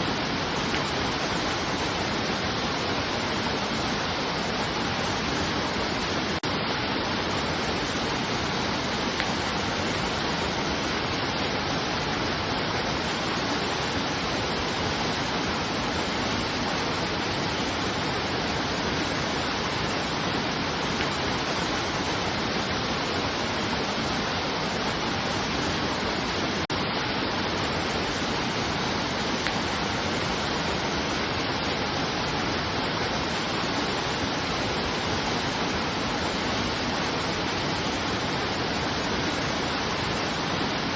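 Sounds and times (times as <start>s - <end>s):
water rushing: 0.0s - 40.9s.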